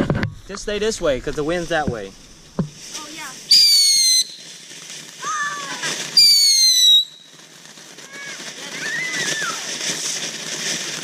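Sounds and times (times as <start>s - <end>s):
crackling hiss of sparks: 0.0s - 11.0s
firework whistle: 2.9s - 4.6s, 5.2s - 10.3s.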